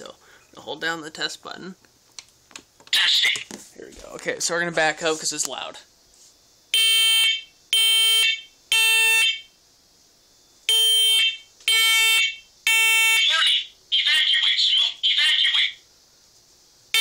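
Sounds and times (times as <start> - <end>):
smoke alarm shrill beeps: 6.7 - 9.6, 10.7 - 14.4.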